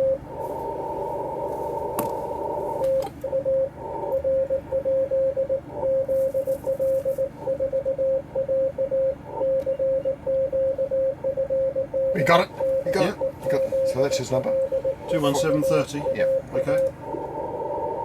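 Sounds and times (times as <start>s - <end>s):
receiver hiss: 0.0s - 4.3s, 12.1s - 18.0s
morse code tone: 0.0s - 18.0s
higher steady tone: 8.4s - 18.0s.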